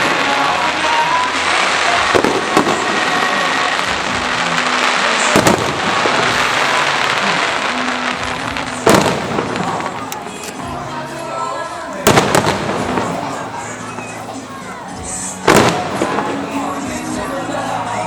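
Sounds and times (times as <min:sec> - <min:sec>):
fireworks bangs: 0:00.0 - 0:10.6, 0:12.0 - 0:14.2, 0:15.0 - 0:17.2
fireworks crackling and fizzing: 0:00.0 - 0:18.0.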